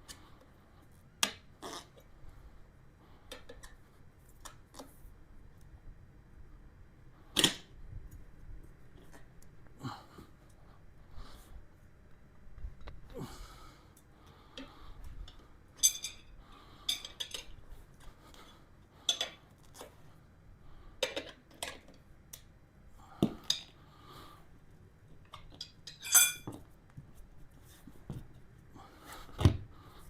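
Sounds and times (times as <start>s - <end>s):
steel bars clinking and clanking: 15.8s - 16.3s, 16.9s - 17.5s, 25.6s - 26.5s.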